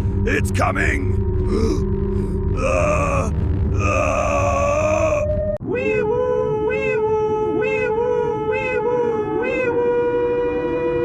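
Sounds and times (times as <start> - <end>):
high cartoon voice groaning: 2.6 - 6.0.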